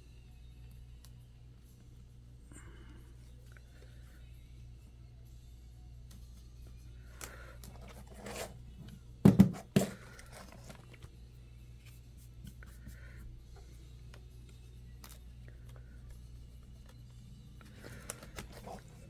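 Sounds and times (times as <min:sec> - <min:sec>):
handling knocks: 0:09.3 - 0:10.5.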